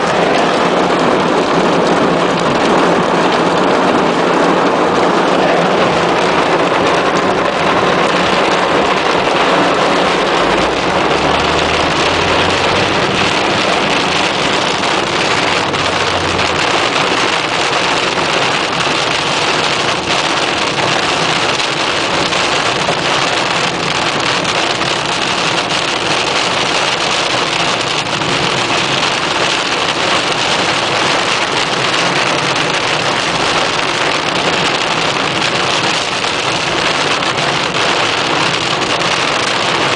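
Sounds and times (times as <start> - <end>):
low rumble: 0.0 - 21.0
heavy rain on a car: 0.0 - 39.9.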